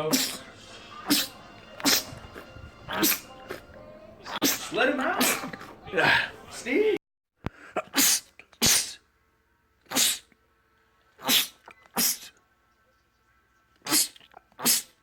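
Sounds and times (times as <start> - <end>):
man sneezing: 0.0 - 3.7, 4.3 - 6.4, 7.7 - 9.0, 9.9 - 10.3, 11.2 - 12.3, 13.9 - 15.0.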